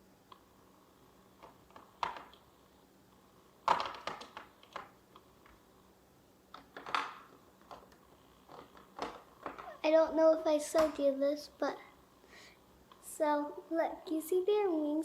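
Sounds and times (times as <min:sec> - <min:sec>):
plastic toy pieces clicking: 0:03.7 - 0:04.9.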